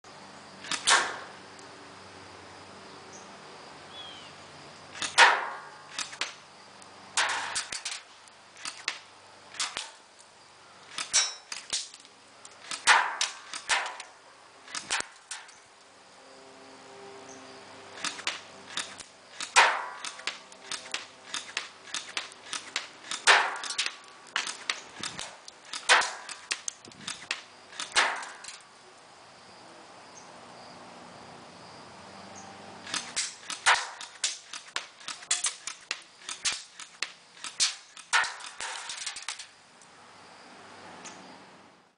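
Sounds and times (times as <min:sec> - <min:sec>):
airsoft gun firing: 0:00.7 - 0:01.3, 0:05.0 - 0:06.4, 0:07.2 - 0:08.0, 0:12.6 - 0:14.1, 0:18.0 - 0:28.6, 0:32.9 - 0:39.2.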